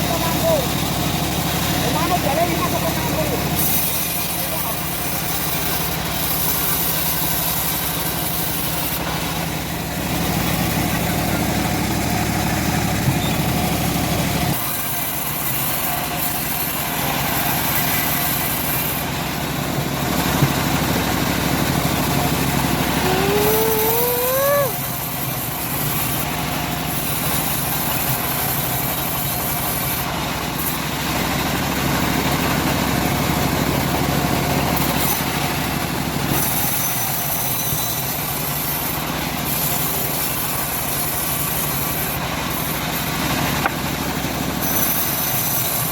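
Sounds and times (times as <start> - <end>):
bandsaw mill sawing log: 0.0 - 45.9.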